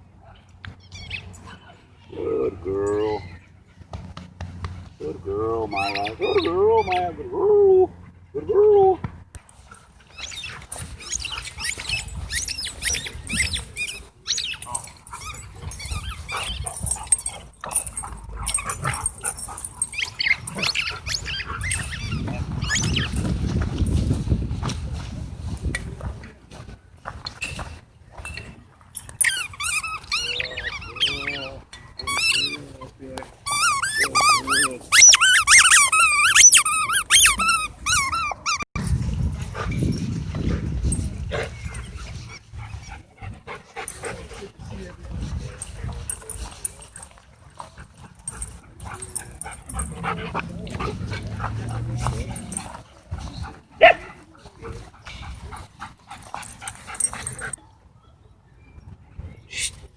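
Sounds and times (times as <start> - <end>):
dogs yelping and whining: 0.7 - 1.8, 2.6 - 3.7, 5.5 - 9.0, 9.9 - 23.3, 29.0 - 38.8, 45.6 - 54.0, 56.1 - 57.6.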